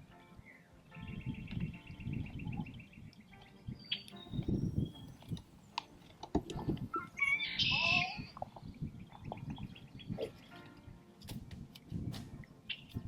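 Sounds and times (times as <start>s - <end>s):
animal call with gliding pitch: 6.9s - 8.4s.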